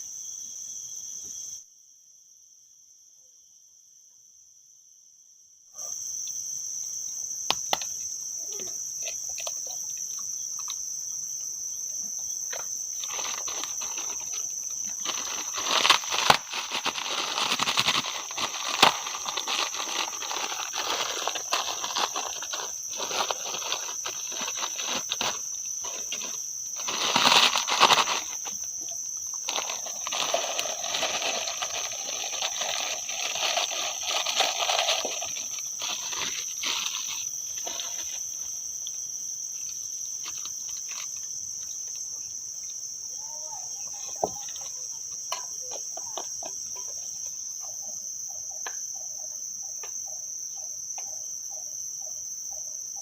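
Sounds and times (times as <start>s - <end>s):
crickets trilling: 0.0s - 53.0s.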